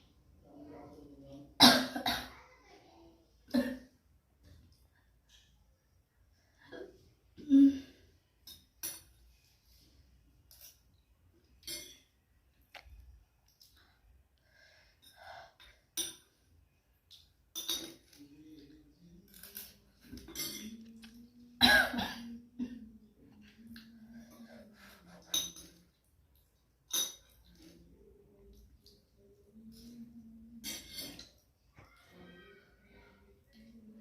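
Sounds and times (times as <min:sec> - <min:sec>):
person breathing: 0:13.9 - 0:15.9.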